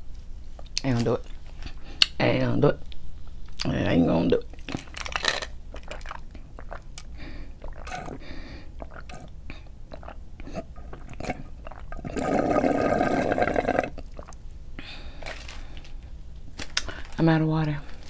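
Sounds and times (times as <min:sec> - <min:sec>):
chewing and lip smacks: 0:05.7 - 0:08.2, 0:08.8 - 0:12.1, 0:14.0 - 0:14.4
loud slurp: 0:07.6 - 0:09.3, 0:09.9 - 0:14.4.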